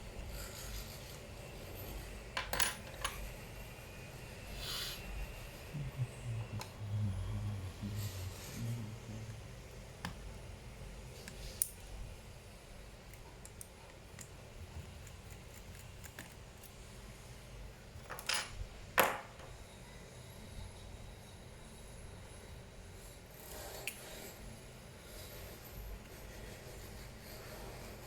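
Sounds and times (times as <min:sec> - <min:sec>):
small tools clicking and tapping: 0:13.1 - 0:16.8.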